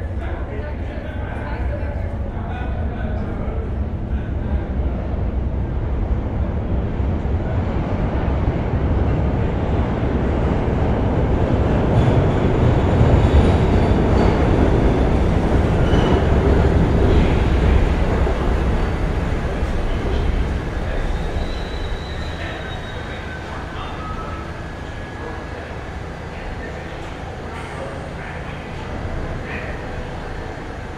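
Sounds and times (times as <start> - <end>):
subway train rumbling: 0.0 - 30.9
high wheel squeals: 21.0 - 25.0.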